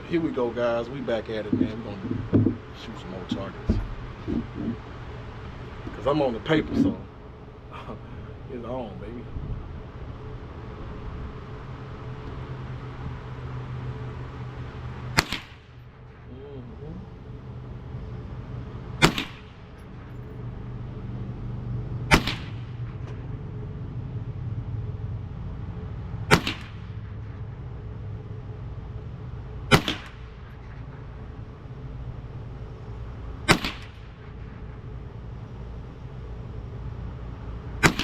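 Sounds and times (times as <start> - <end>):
low background rumble: 0.0 - 38.0
gunshots with echo: 15.1 - 15.8, 19.0 - 19.7, 22.1 - 23.0, 26.3 - 27.0, 29.7 - 30.4, 33.5 - 34.4, 37.8 - 38.0.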